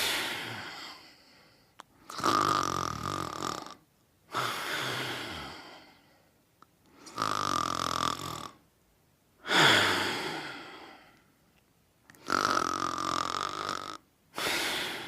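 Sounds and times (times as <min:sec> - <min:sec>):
person snoring: 0:00.0 - 0:01.4, 0:02.0 - 0:06.0, 0:07.0 - 0:08.6, 0:09.4 - 0:11.2, 0:12.1 - 0:15.0
loud breath: 0:00.0 - 0:01.8, 0:09.4 - 0:11.3, 0:14.3 - 0:15.0.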